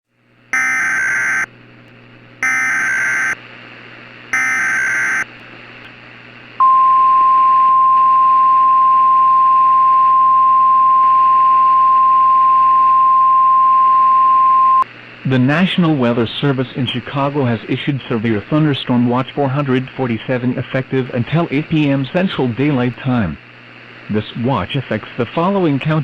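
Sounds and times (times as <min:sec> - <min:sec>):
data bursts: 0:00.6 - 0:01.5, 0:02.4 - 0:03.4, 0:04.4 - 0:05.3
steady high alarm tone: 0:00.6 - 0:01.5, 0:02.4 - 0:03.4, 0:04.3 - 0:05.3
faint radio hiss: 0:15.0 - 0:26.0.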